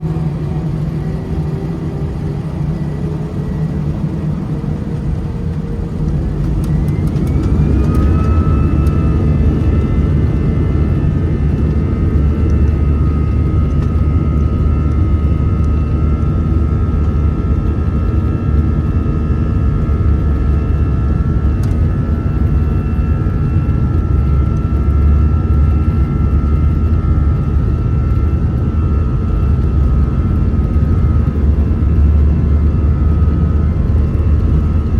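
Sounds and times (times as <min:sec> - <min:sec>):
jet engines spooling up: 0:00.0 - 0:16.3.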